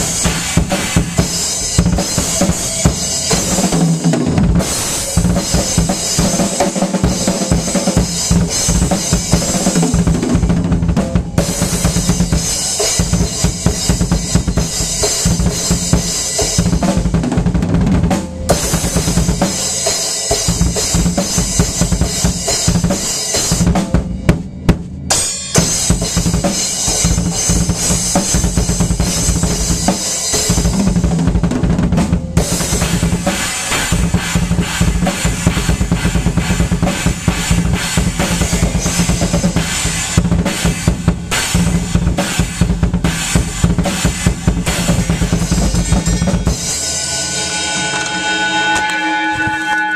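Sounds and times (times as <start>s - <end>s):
acoustic drum kit playing: 0.0s - 49.9s.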